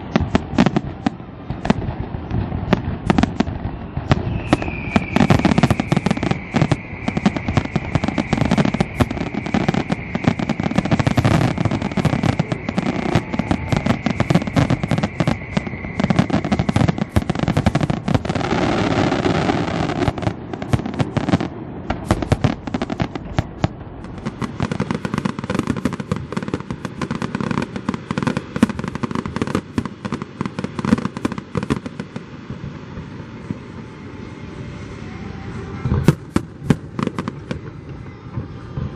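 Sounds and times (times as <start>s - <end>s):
high steady whistle: 0.0s - 31.9s, 33.0s - 38.9s
fireworks bangs and crackling: 0.0s - 38.9s.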